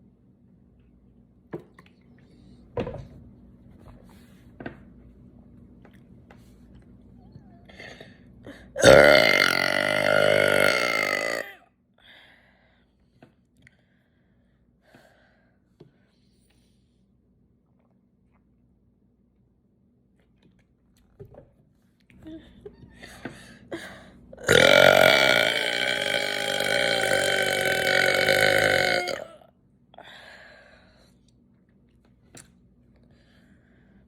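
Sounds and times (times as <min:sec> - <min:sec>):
person burping: 0:08.8 - 0:11.6, 0:24.4 - 0:29.4.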